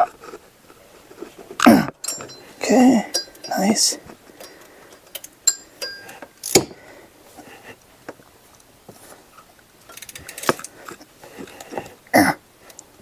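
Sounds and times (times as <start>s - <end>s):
metal clink with ring: 2.0s - 3.8s, 4.4s - 6.8s
faint clicks: 12.6s - 13.0s.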